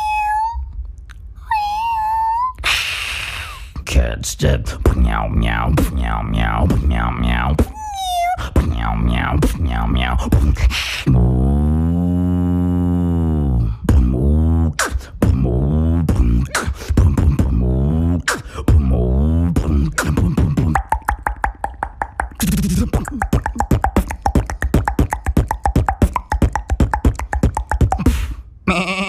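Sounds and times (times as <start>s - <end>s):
vocal beatboxing: 2.7s - 29.0s.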